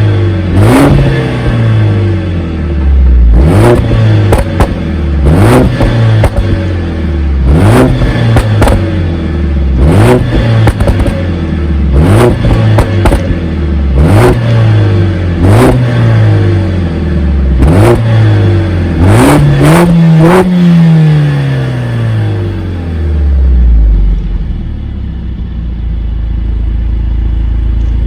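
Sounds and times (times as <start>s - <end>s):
car engine revving: 0.0s - 25.5s
exhaust pops and crackles: 3.7s - 4.9s, 5.5s - 6.7s, 7.8s - 9.0s, 10.1s - 11.3s, 12.2s - 13.5s.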